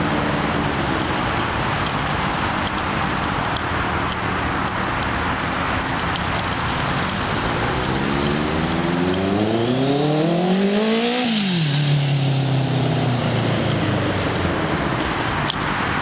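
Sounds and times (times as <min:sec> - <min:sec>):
motorcycle engine revving: 0:06.9 - 0:15.0.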